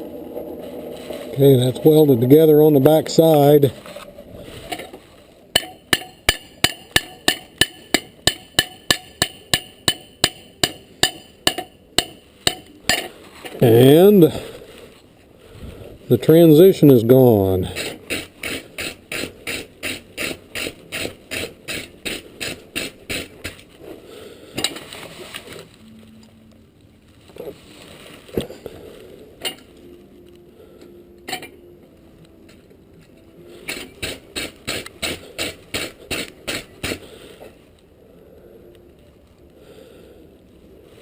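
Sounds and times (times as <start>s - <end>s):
hammer striking steel on anvil: 5.5s - 13.1s.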